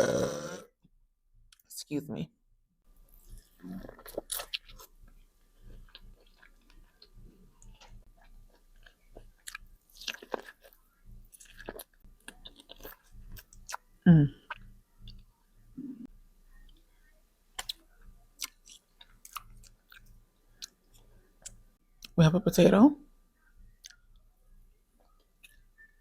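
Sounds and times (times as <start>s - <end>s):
hummed mm: 14.1s - 16.1s.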